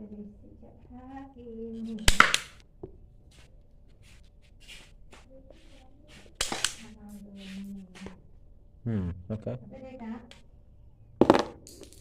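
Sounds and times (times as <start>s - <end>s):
toy gun firing: 2.0s - 2.6s, 6.4s - 6.9s.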